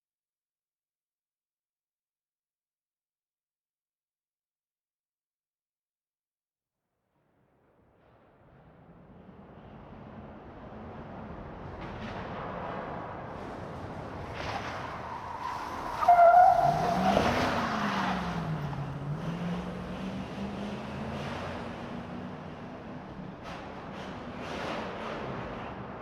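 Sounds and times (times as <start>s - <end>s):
truck engine: 9.1s - 26.0s
high-pitched squeal: 14.8s - 17.7s.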